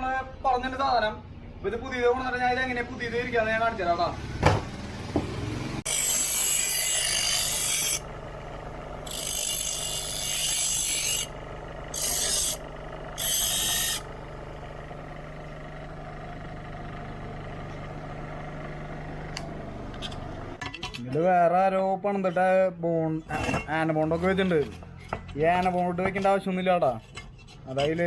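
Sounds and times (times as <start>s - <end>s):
rasping scrape on metal: 5.9s - 8.1s, 9.0s - 12.6s, 13.2s - 14.1s, 24.1s - 28.0s.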